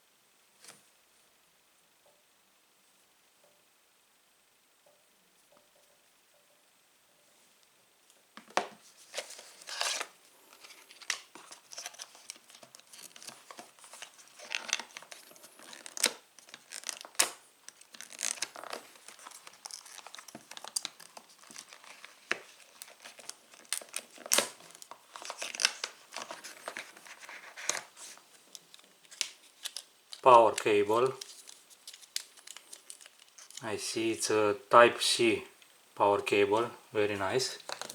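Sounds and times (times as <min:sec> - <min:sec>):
packaging crinkling and tearing: 0:09.0 - 0:33.6, 0:37.6 - 0:37.9.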